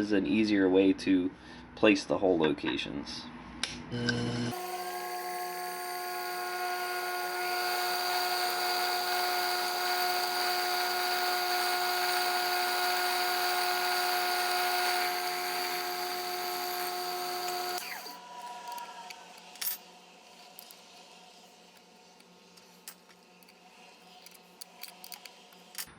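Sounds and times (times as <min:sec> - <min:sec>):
mill motor whining while drilling: 0:04.0 - 0:18.8.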